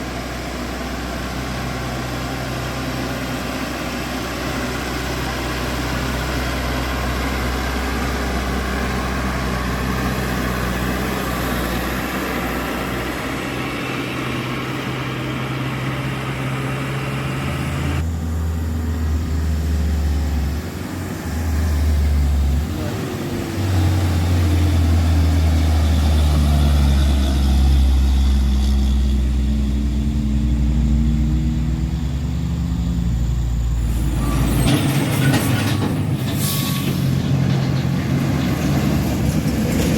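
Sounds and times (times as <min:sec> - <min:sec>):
diesel truck engine running: 0:00.0 - 0:36.4
deep engine drone: 0:02.8 - 0:34.6.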